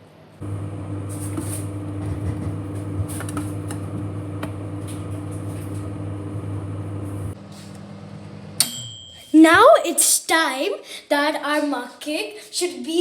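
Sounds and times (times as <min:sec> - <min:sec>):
microwave oven humming: 0:00.0 - 0:09.7.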